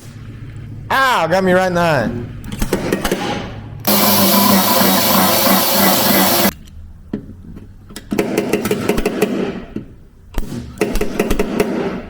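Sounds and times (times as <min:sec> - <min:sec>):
angle grinder grinding metal: 0:03.9 - 0:06.5.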